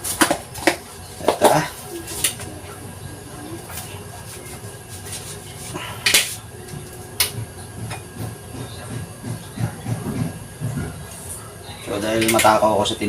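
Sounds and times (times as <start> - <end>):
dishes and utensils clacking: 11.9 - 12.7.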